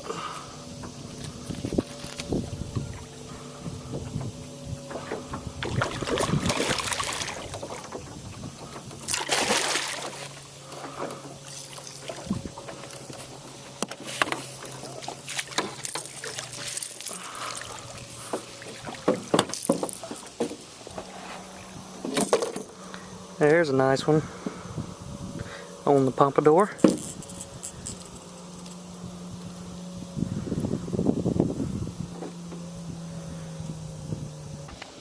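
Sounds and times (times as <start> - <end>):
steady low hum: 0.0 - 35.0
water splashing: 4.9 - 10.5, 11.4 - 13.3, 14.5 - 20.8.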